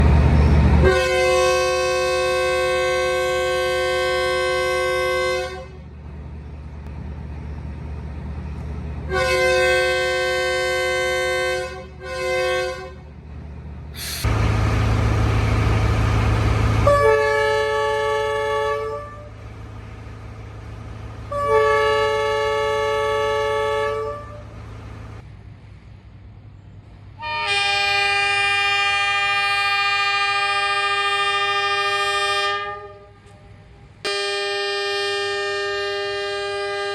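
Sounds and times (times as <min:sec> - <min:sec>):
train low rumble: 0:00.0 - 0:36.9
differently pitched horn blasts: 0:00.8 - 0:05.8, 0:09.1 - 0:13.1, 0:16.7 - 0:19.4, 0:21.3 - 0:24.6, 0:27.2 - 0:36.9
locomotive air horn blasts: 0:00.8 - 0:05.9, 0:09.1 - 0:13.1, 0:16.7 - 0:19.4, 0:21.2 - 0:24.6, 0:27.2 - 0:36.9.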